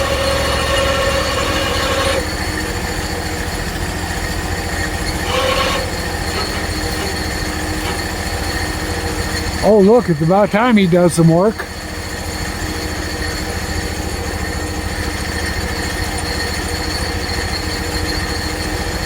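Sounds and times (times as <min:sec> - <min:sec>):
motor drone: 0:00.0 - 0:02.5.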